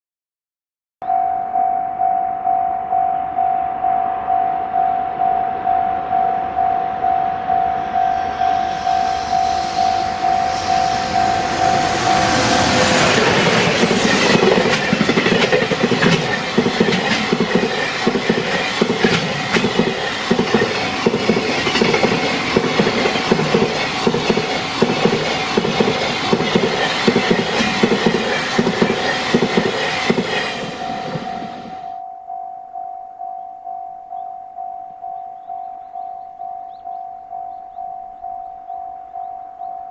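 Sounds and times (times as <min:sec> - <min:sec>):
level crossing bell dinging: 0:01.0 - 0:08.8
freight train rushing: 0:05.2 - 0:32.0
wagon wheels clattering on rail joints: 0:12.6 - 0:31.3.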